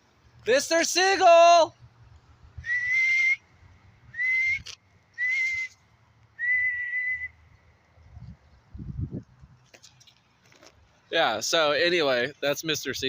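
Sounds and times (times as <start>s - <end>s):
person whistling: 2.6s - 3.4s, 4.1s - 5.8s, 6.4s - 7.4s.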